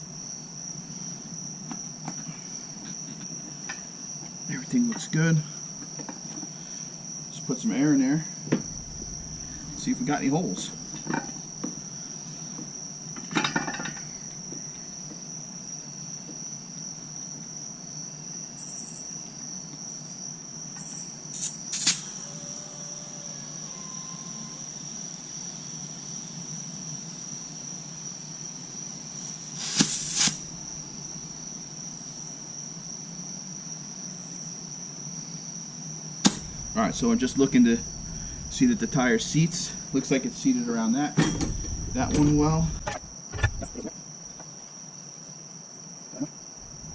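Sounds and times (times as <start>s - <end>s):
cricket trill: 0.0s - 46.9s
compressed air hissing: 21.3s - 24.7s, 29.0s - 31.4s, 36.2s - 40.4s, 41.2s - 43.8s.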